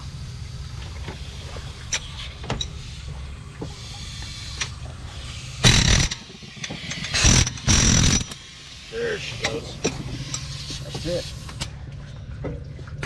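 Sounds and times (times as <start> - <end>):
steady low hum: 0.0 - 13.0
air impact wrench bursts: 3.7 - 11.6.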